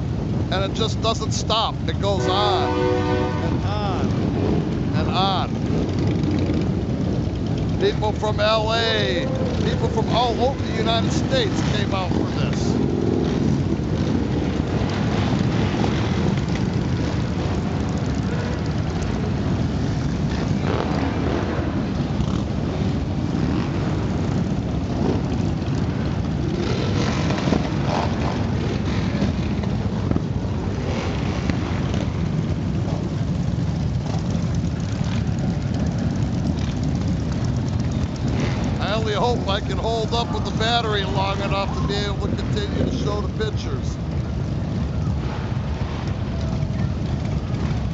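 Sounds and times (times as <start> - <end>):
motorcycle engines droning: 0.0 - 47.9
single motorcycle passing close: 2.3 - 43.2.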